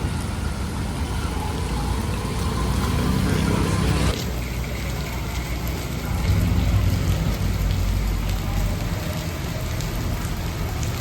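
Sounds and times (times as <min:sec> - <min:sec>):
steady rain falling: 0:00.0 - 0:11.0
street traffic rumble: 0:00.0 - 0:11.0.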